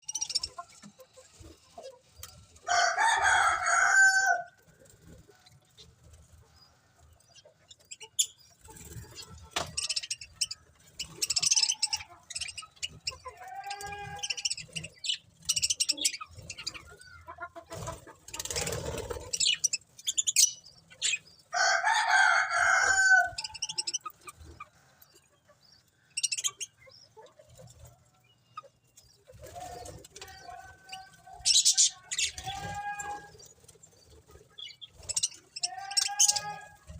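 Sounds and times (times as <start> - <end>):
budgerigars chirping: 0.0 - 0.9, 7.3 - 17.3, 18.4 - 21.4, 23.2 - 24.7, 25.7 - 27.3, 30.9 - 32.7, 34.5 - 36.6
drawn-out budgerigar calls: 0.0 - 4.1, 7.2 - 36.9.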